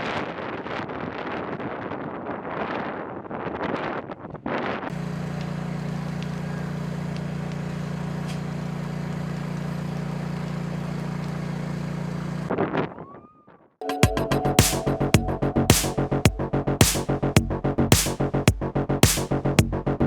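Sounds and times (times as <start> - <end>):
engine humming steadily: 4.9 - 12.5.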